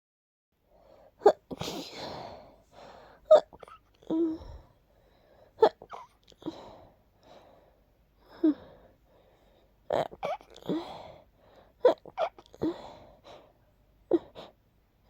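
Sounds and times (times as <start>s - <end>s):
person sneezing: 1.2s - 2.4s.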